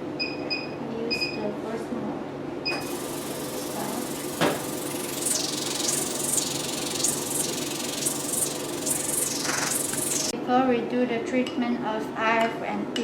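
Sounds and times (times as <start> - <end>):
high hiss: 2.8 - 10.3
low steady hum: 2.8 - 10.3.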